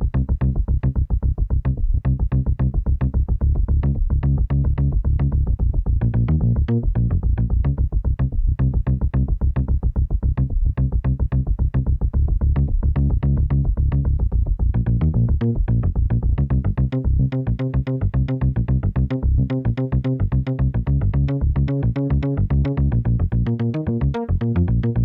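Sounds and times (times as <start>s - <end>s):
deep buzzing drone: 0.0s - 25.0s
sharp clicking pulses: 12.6s - 25.0s.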